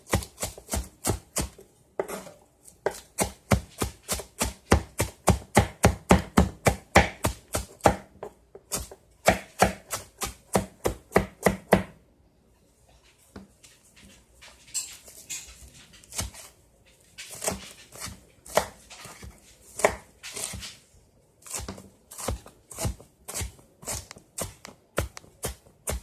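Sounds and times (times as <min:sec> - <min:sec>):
knife chopping on cutting board: 0:00.0 - 0:12.0, 0:16.0 - 0:16.5, 0:17.2 - 0:20.8, 0:21.4 - 0:26.0.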